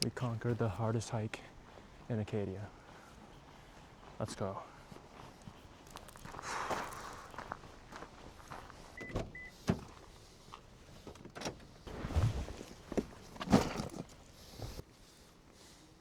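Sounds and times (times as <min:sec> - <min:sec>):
knocks and clunks: 0:11.0 - 0:14.8.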